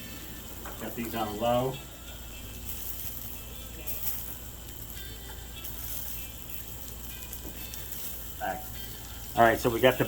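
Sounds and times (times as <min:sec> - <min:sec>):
background music: 0:00.0 - 0:10.0
steady low hum: 0:00.0 - 0:10.0.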